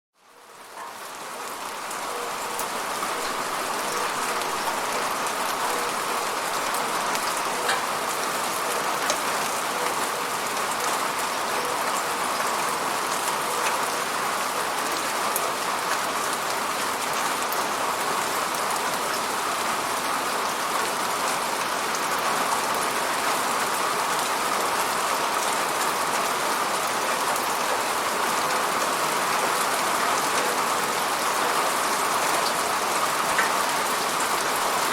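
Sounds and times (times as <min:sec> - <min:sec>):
steady rain hissing: 0:00.2 - 0:34.9
raindrops ticking: 0:00.8 - 0:14.0.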